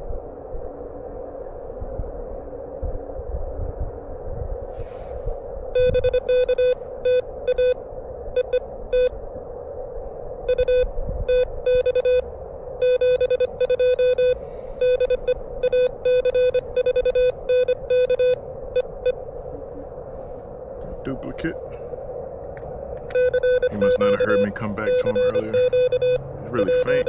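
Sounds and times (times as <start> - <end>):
morse code tone: 5.8 - 7.8, 8.4 - 9.1, 10.5 - 12.2, 12.8 - 19.2, 23.1 - 27.0
radio band noise hiss: 10.6 - 22.0, 23.0 - 27.0.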